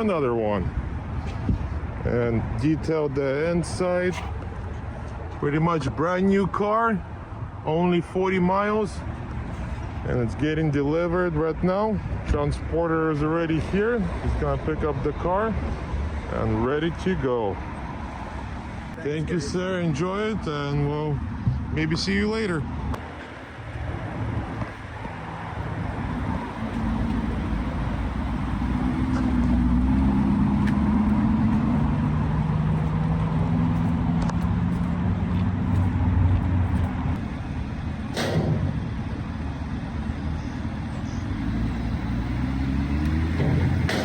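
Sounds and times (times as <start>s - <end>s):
vehicle engine idling: 25.6s - 32.2s, 36.8s - 44.0s
sharp clank: 38.0s - 42.2s, 43.2s - 44.0s.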